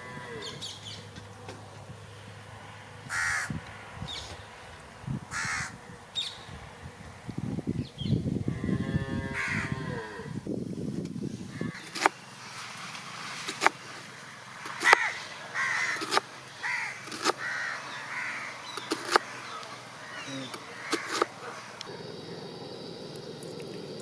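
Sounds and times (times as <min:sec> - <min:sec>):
crows cawing: 0:03.0 - 0:03.6, 0:05.3 - 0:05.9, 0:08.5 - 0:10.0, 0:11.5 - 0:12.1, 0:14.6 - 0:24.0
low rumbling: 0:18.5 - 0:24.0
sharp clicks: 0:18.7 - 0:19.8.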